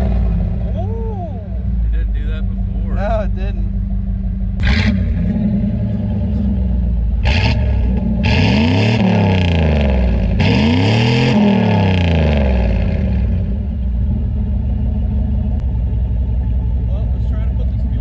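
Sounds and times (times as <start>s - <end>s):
car engine revving: 0.0s - 18.0s.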